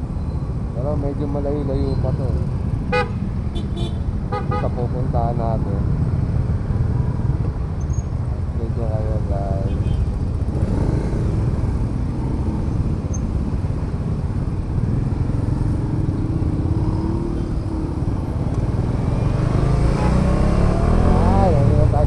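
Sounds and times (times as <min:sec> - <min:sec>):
motorcycle engine rumble: 0:00.0 - 0:22.0
road noise: 0:00.0 - 0:22.0.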